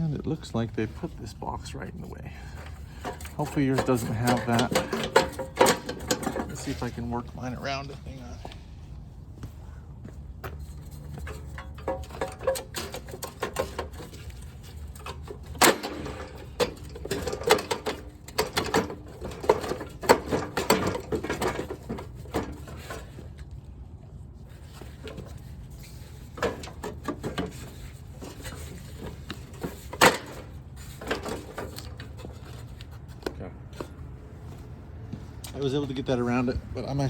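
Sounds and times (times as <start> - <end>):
snowblower part clicking and rattling: 2.4 - 7.4, 11.1 - 23.5, 24.9 - 32.9.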